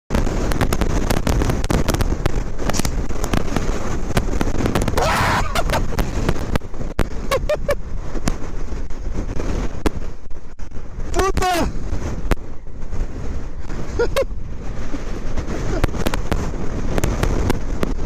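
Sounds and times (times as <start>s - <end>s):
crackle of pops: 0.1s - 11.6s, 15.7s - 18.0s
wind buffeting microphone: 0.1s - 18.0s.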